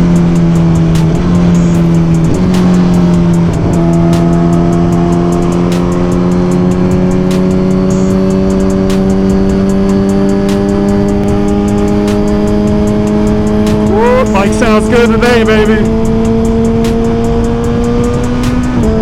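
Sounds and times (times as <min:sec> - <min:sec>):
motorcycle engine accelerating: 0:00.0 - 0:19.0
music with steady beat: 0:00.0 - 0:19.0.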